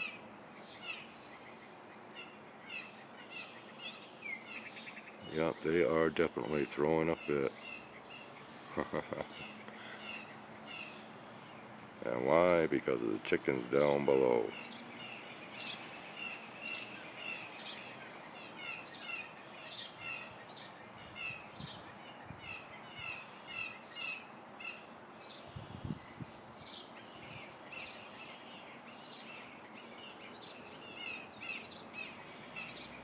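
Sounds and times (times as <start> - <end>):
blue jays scolding: 0.0 - 25.4.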